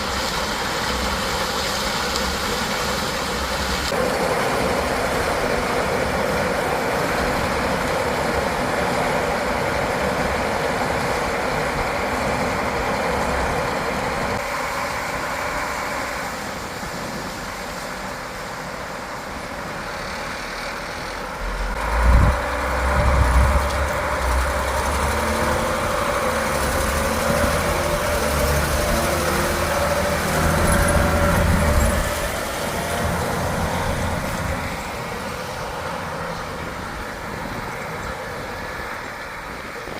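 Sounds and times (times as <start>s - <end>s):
harvest machinery engine drone: 0.1s - 39.9s
deep low rumbles: 21.4s - 27.8s.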